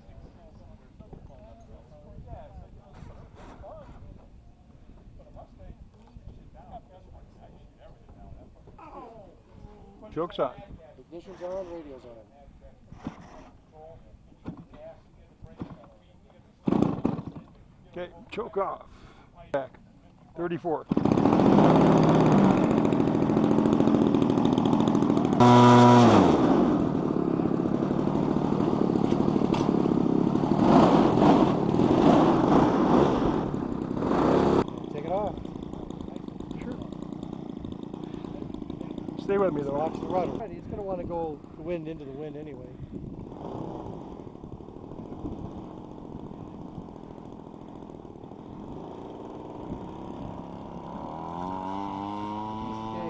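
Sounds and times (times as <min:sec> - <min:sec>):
two-stroke model engine running: 0:20.9 - 0:53.0.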